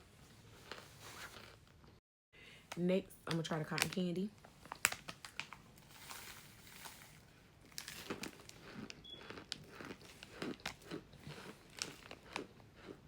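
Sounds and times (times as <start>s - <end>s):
person chewing crunchy food: 0.5s - 1.7s, 5.8s - 13.0s.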